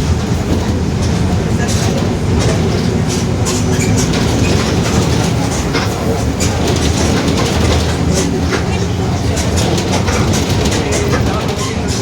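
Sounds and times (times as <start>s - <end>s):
body clacks and rattles: 0.0s - 12.0s
bus engine and drivetrain rumble: 0.0s - 12.0s
differential growling: 0.6s - 11.3s.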